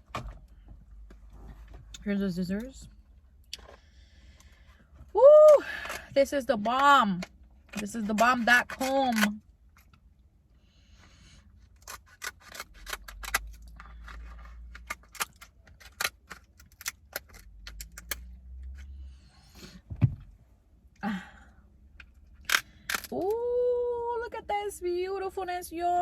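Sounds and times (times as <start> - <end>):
thump: 19.9 - 20.2.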